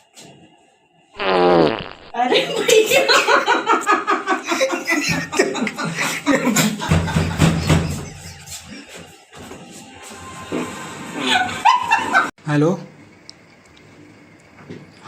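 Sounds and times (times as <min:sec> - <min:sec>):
people laughing: 0:02.3 - 0:09.0, 0:11.2 - 0:12.3.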